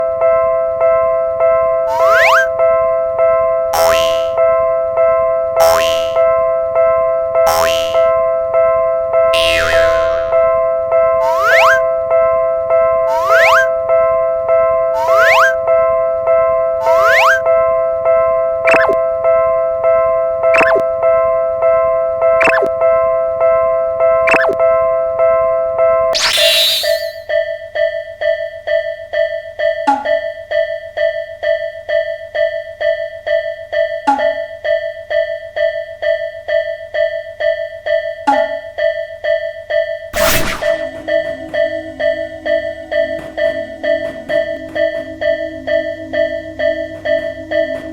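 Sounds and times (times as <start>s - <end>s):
electronic two-tone chime: 1.9s - 2.5s, 3.8s - 4.4s, 5.6s - 6.2s, 7.5s - 8.1s, 9.4s - 10.6s, 11.2s - 11.9s, 13.1s - 13.8s, 15.0s - 15.6s, 16.8s - 17.5s, 18.7s - 19.0s, 20.6s - 20.9s, 22.4s - 22.8s, 24.3s - 24.6s, 26.2s - 27.3s
rising whistling glide: 1.9s - 2.5s, 11.2s - 11.8s, 13.1s - 13.7s, 15.0s - 15.6s, 16.8s - 17.4s, 26.2s - 27.2s
level-crossing warning bell ringing: 41.0s - 47.9s.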